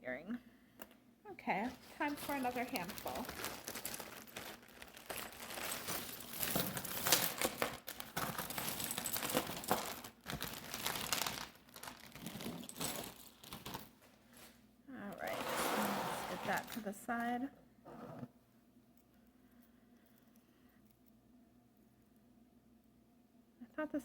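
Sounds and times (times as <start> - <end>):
bag of jewelry crinkling: 1.6 - 14.0, 15.2 - 16.9.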